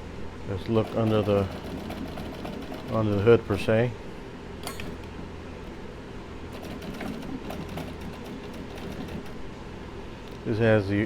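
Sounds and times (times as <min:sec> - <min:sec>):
steady low hum: 0:00.0 - 0:11.0
typewriter cover clicks and rattles: 0:06.6 - 0:09.4.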